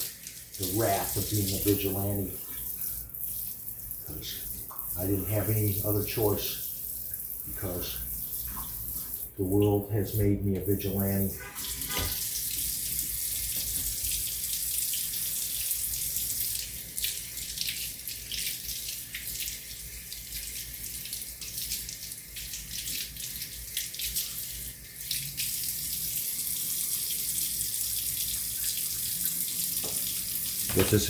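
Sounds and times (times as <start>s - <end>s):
rinsing under running water: 0.0s - 31.0s
tap running into a sink: 7.1s - 14.4s, 29.6s - 31.0s.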